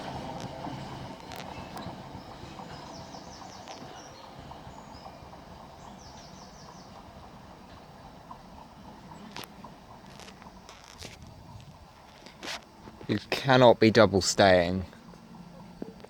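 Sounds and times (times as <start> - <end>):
train rumbling: 0.0 - 16.0
train wheel clicks: 0.0 - 16.0
bird chirping: 1.5 - 8.0.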